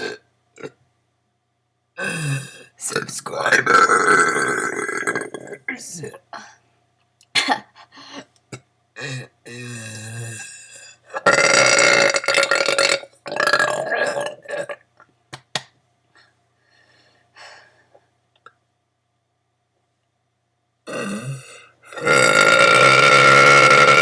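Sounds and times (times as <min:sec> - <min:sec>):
girl burping: 0:00.0 - 0:00.8, 0:02.0 - 0:02.7, 0:03.8 - 0:05.7, 0:11.1 - 0:14.8.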